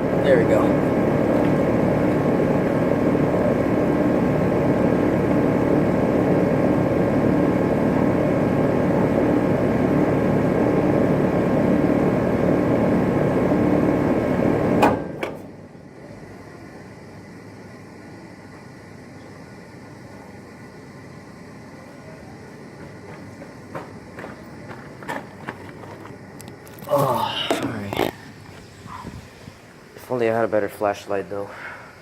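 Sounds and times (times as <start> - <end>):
air conditioner condenser humming: 0.0 - 32.0.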